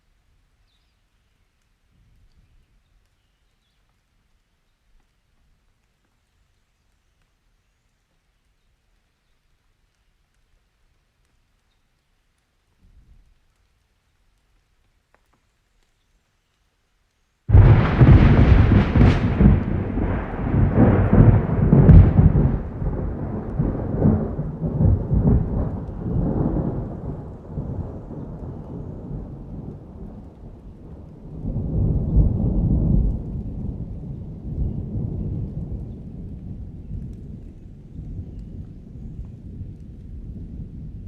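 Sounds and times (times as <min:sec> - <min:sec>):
thunder clap and rumble: 0:17.5 - 0:41.0.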